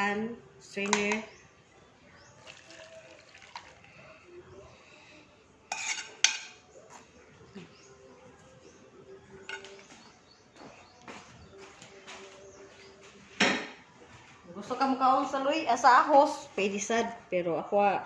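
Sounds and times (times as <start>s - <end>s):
kitchenware clinking and knocking: 9.4s - 10.0s, 13.4s - 13.8s.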